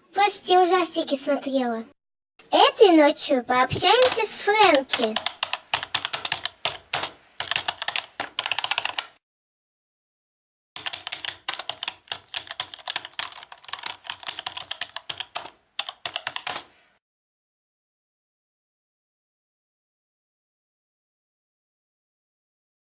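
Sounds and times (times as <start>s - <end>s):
rapid typing on keyboard: 3.8s - 9.2s, 10.8s - 16.7s.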